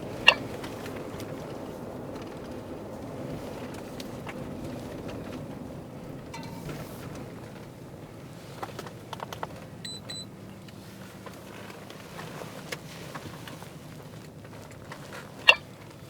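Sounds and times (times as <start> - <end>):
car cabin low hum: 0.0 - 16.0
short high beeps: 9.9 - 10.3.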